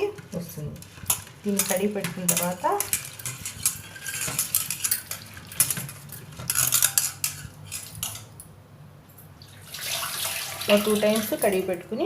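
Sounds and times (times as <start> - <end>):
metal utensils clinking and scraping: 0.3 - 8.4, 10.7 - 11.8.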